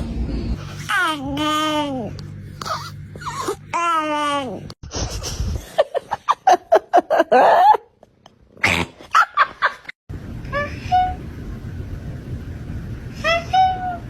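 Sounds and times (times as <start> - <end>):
low hum: 10.1 - 14.0.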